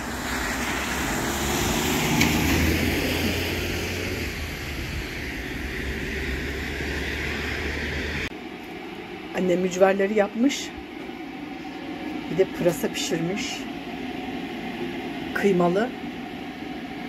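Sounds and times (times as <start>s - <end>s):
car passing on wet road: 0.0s - 8.3s.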